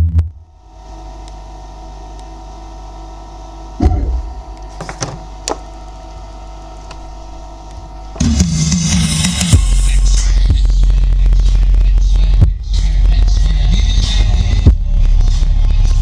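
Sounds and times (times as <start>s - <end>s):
bass-heavy electronic music: 0.0s - 0.7s, 3.8s - 4.6s, 8.2s - 16.0s
steady hum: 0.0s - 16.0s
deep bass hit: 3.8s - 4.6s.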